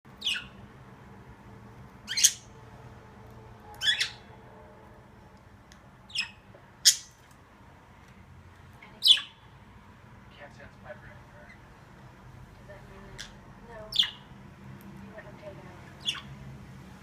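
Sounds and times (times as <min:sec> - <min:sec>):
parakeets squawking: 0:00.1 - 0:00.6, 0:02.0 - 0:02.5, 0:03.7 - 0:04.3, 0:06.0 - 0:07.2, 0:08.9 - 0:09.5, 0:12.9 - 0:14.3, 0:15.8 - 0:16.4
low steady hum: 0:00.1 - 0:17.0.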